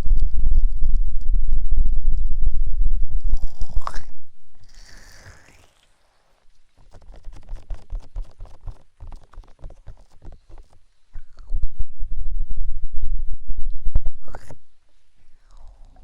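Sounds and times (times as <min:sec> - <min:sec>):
deep rumbles: 0:00.0 - 0:04.8
crackling and scratching on microphone: 0:00.0 - 0:12.6, 0:13.2 - 0:16.0.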